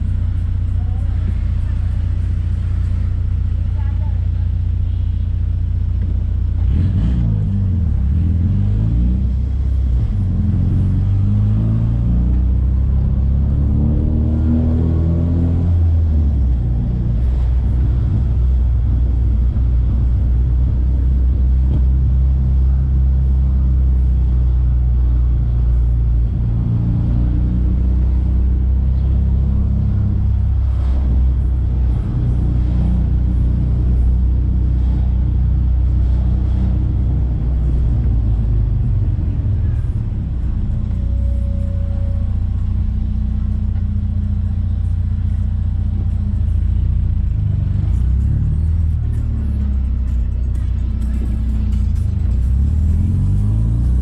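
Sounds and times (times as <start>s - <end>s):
car engine rumbling: 0.0s - 54.0s.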